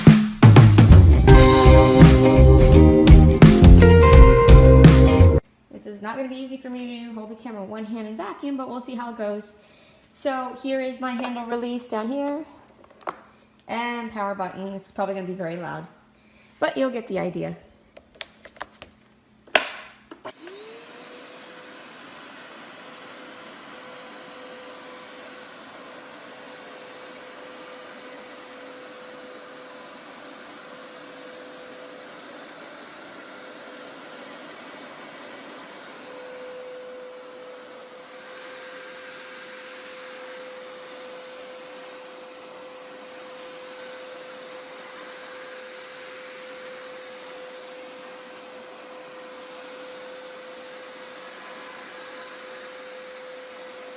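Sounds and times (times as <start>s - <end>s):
carpet cleaner motor whining: 20.2s - 53.9s.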